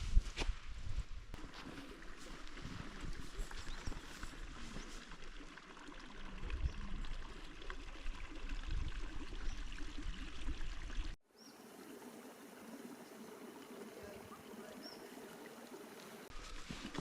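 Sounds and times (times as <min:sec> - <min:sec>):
wind rumbling on microphone: 0:00.0 - 0:05.2, 0:06.1 - 0:11.2
running water rushing: 0:01.4 - 0:17.0.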